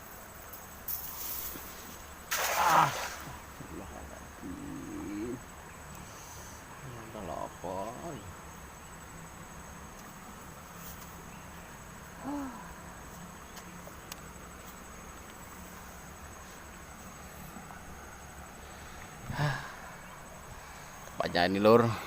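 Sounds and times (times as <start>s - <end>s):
crickets trilling: 0.0s - 22.0s
faint background hiss: 0.0s - 22.0s.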